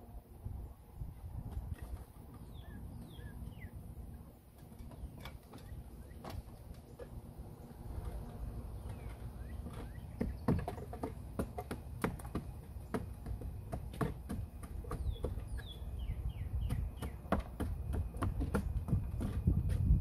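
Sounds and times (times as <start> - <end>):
bird chirping: 2.3 - 7.2, 8.4 - 11.1, 14.6 - 17.6.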